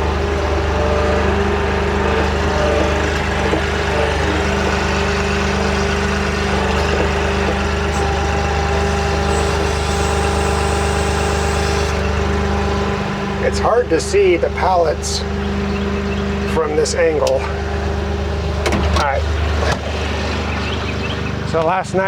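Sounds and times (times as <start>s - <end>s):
engine running steadily: 0.0s - 22.0s.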